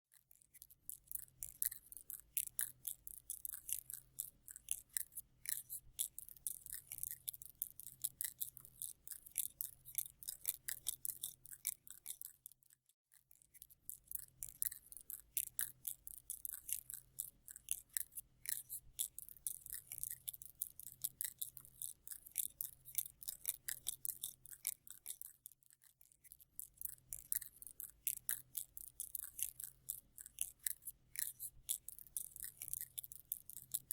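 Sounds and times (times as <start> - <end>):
dry clicking and scratching: 13.5 - 33.9.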